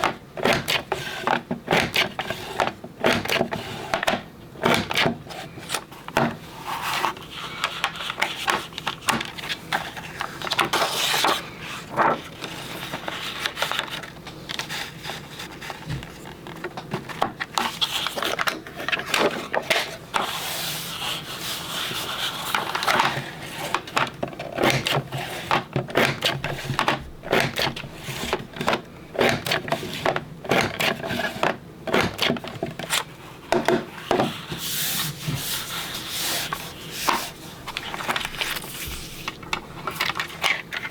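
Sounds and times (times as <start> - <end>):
paper punch clacking: 0.0 - 5.3, 22.8 - 34.4
paper sliding against tool: 34.3 - 39.4.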